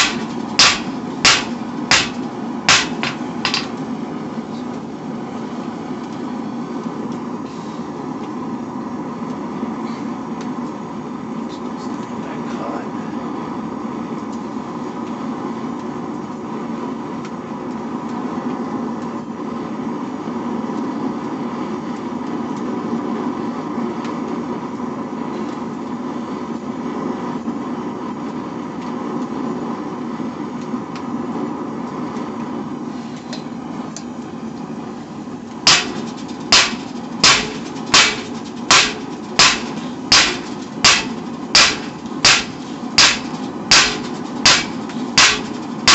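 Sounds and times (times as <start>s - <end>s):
hammer blows on steel: 0.0s - 3.8s, 35.7s - 45.9s
forge running: 0.0s - 11.5s, 13.2s - 45.9s.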